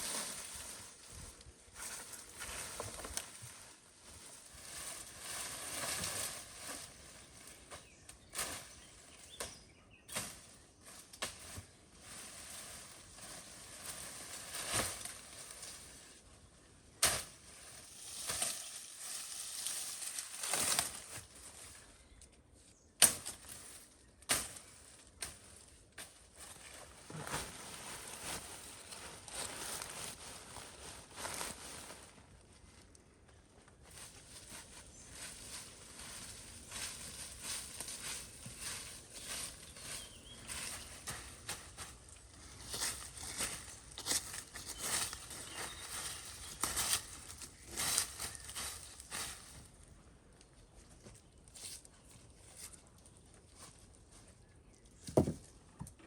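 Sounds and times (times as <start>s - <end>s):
dry branches rustling and crackling: 0.0s - 55.6s
branches snapping: 18.2s - 21.3s, 23.0s - 26.1s.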